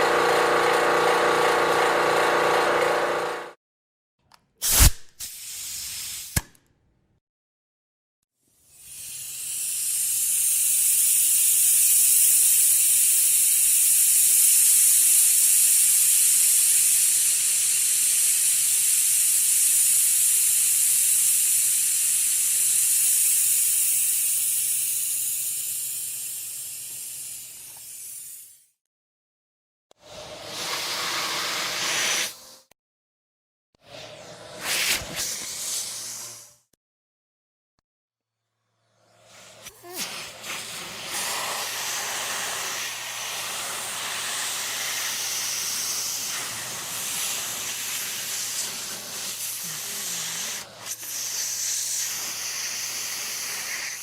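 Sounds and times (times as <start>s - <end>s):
compressed air hissing: 4.6s - 6.4s, 8.6s - 28.7s, 30.2s - 32.5s, 33.9s - 36.6s, 39.2s - 54.0s.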